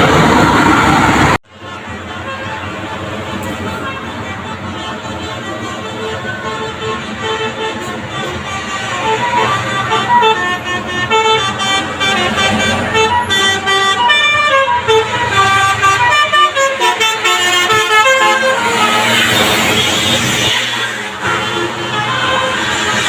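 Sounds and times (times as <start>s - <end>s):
noisy rush: 0.0s - 10.2s, 18.2s - 23.0s
bus horn playing melody: 1.5s - 23.0s.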